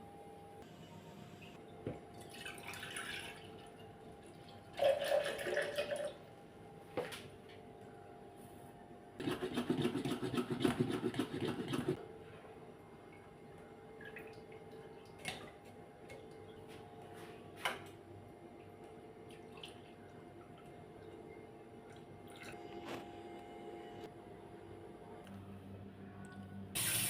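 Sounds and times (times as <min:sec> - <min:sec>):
faint steady hum: 0:00.0 - 0:09.2
water running from a tap: 0:26.8 - 0:27.0.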